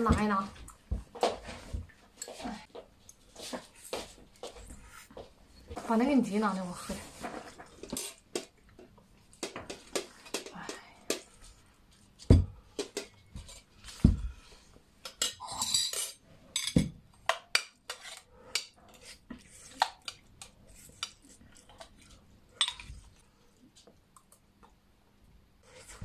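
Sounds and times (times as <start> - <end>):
tableware clinking: 15.1 - 16.9.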